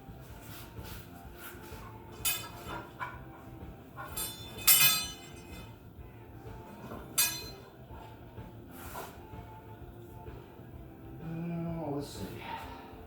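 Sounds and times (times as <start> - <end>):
metal rods clinking: 2.1 - 3.2, 4.0 - 5.8, 6.8 - 7.8.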